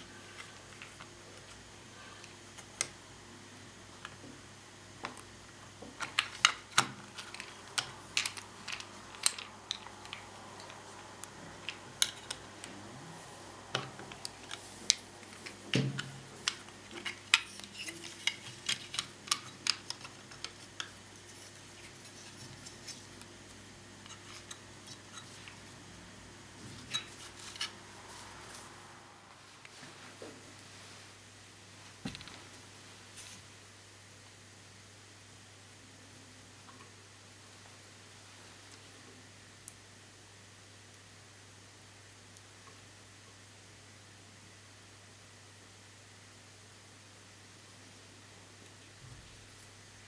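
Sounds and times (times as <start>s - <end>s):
small tools clicking and clinking: 5.9s - 12.7s, 13.7s - 23.2s, 26.8s - 27.8s.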